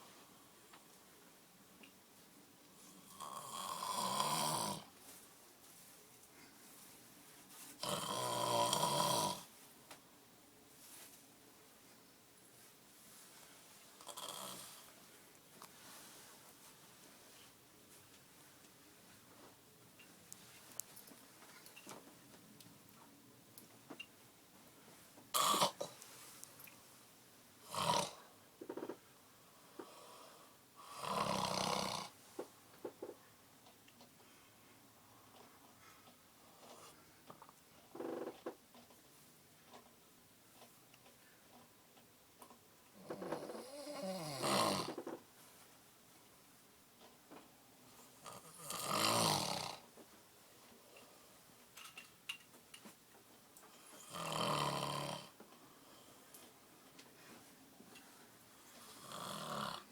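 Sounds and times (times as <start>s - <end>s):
person snoring: 3.0s - 4.9s, 7.8s - 9.5s, 14.0s - 14.9s, 25.4s - 26.0s, 27.6s - 28.3s, 29.8s - 32.2s, 43.0s - 45.1s, 48.3s - 49.8s, 53.9s - 55.4s, 58.9s - 59.9s.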